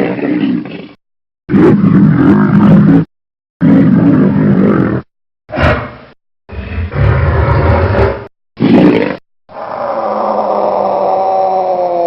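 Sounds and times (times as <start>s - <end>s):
deep growling monster roars: 1.5s - 12.0s.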